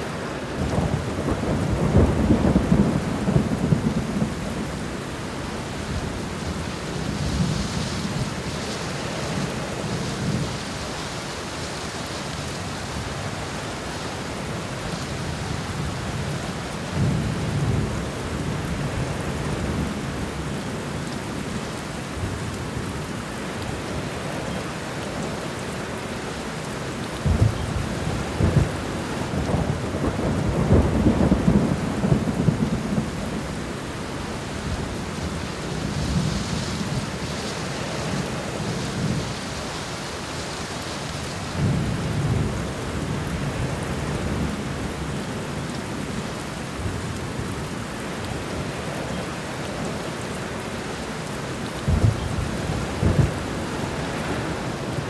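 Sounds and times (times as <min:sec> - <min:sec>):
heavy rain: 0:00.0 - 0:55.0
rolling thunder: 0:00.6 - 0:05.0, 0:27.2 - 0:39.7, 0:51.8 - 0:55.0.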